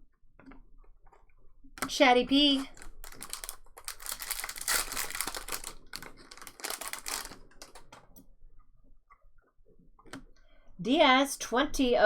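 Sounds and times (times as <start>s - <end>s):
cards and wrappers crinkling: 2.4s - 8.1s.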